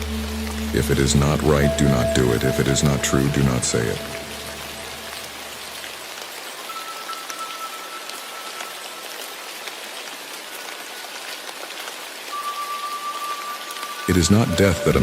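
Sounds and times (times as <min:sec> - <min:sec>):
singing bowl ringing tones: 0:00.0 - 0:05.5, 0:06.7 - 0:09.1, 0:12.3 - 0:15.0
steady rain falling: 0:00.0 - 0:15.0.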